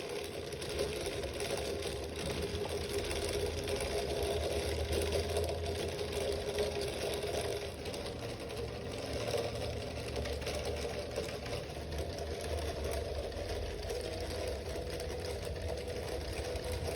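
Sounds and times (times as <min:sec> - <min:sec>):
model engine mechanical clatter: 0:00.0 - 0:16.9.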